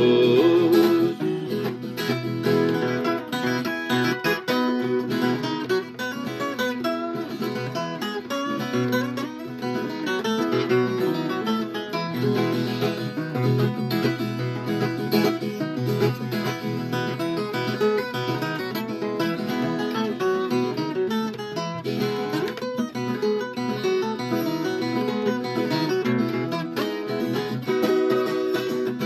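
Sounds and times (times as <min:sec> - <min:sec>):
folk guitar plucked and strummed: 0:00.0 - 0:29.0.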